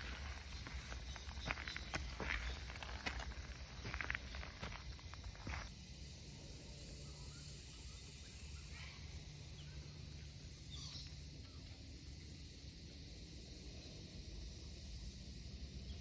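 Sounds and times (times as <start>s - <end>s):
faint chirps: 0.0s - 5.7s, 6.8s - 12.2s
steady low hum: 0.0s - 16.0s.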